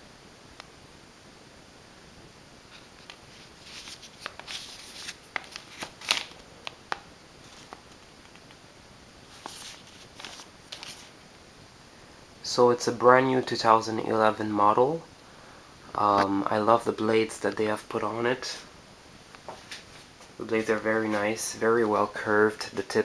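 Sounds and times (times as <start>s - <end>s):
paper rustling: 2.7s - 8.4s, 9.3s - 11.2s.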